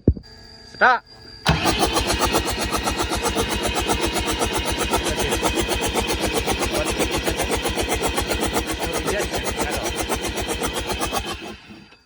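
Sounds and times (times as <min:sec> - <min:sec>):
diesel engine cranking on starter: 0:01.4 - 0:12.0.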